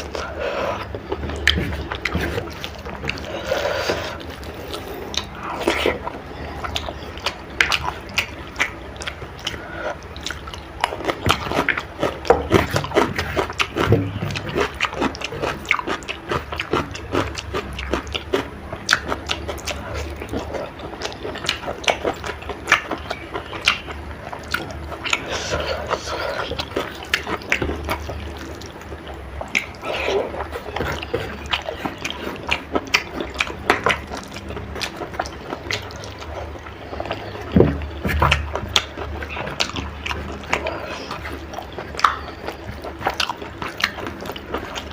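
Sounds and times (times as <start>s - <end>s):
wet chewing and lip smacking: 0.0s - 44.9s.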